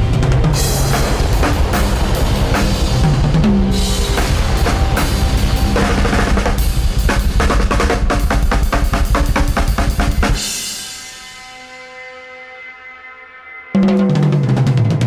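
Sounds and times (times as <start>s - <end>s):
cymbals ringing: 0.0s - 7.4s
drum kit playing: 0.0s - 11.8s, 13.8s - 15.0s.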